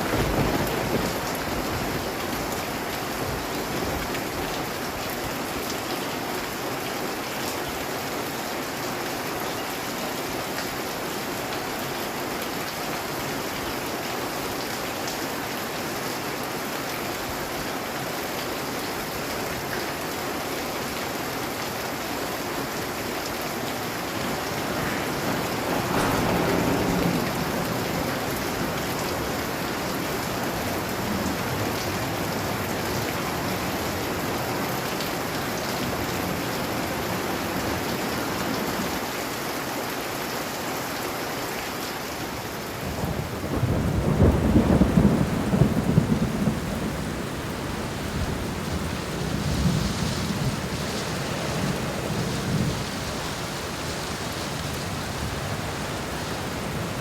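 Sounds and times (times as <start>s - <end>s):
thunder rumbling: 0.0s - 4.6s, 24.0s - 32.8s, 42.6s - 57.0s
heavy rain: 0.0s - 57.0s.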